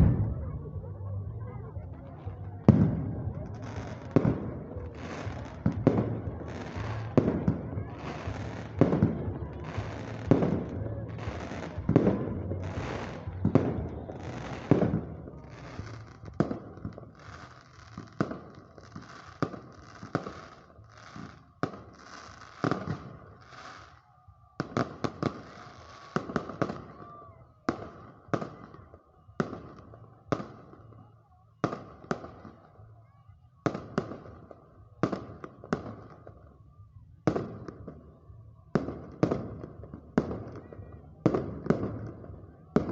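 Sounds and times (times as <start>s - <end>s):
firework crackling: 2.6s - 24.0s.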